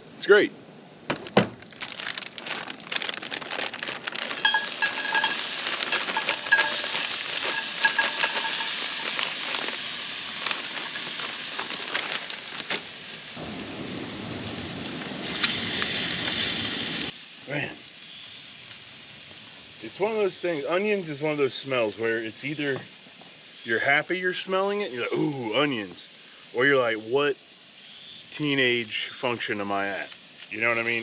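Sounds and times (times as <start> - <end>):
sharp crackles: 1.1 - 20.1
food sizzling in a skillet: 4.2 - 31.0.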